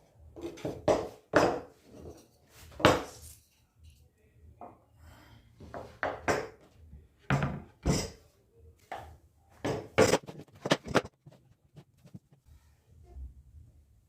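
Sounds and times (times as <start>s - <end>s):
wood and tools clattering: 0.4s - 3.2s, 8.9s - 12.4s.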